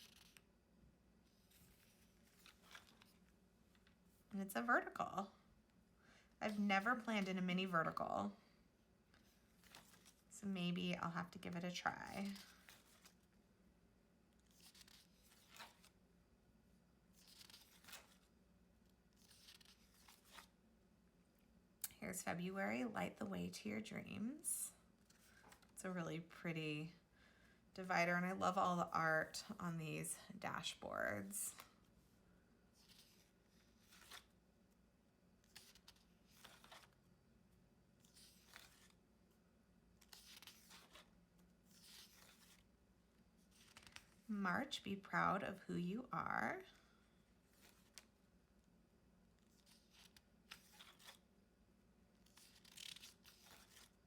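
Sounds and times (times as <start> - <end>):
paper pages turning: 0.0 - 0.5, 1.2 - 4.0, 9.1 - 10.3, 11.3 - 13.4, 14.4 - 16.0, 17.1 - 18.3, 19.1 - 20.6, 25.0 - 25.8, 32.8 - 34.4, 35.4 - 37.1, 38.0 - 39.0, 40.0 - 42.7, 43.4 - 44.3, 47.5 - 48.2, 49.4 - 51.3, 52.1 - 54.0.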